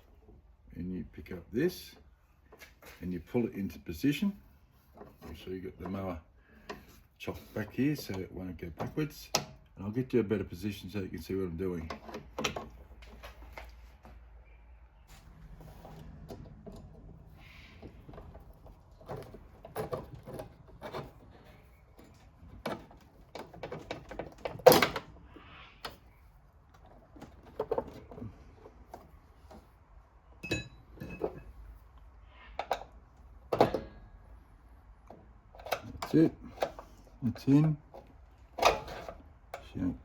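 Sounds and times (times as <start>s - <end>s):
metal clicks and clunks: 4.9s - 9.8s, 11.7s - 13.8s, 15.3s - 40.0s.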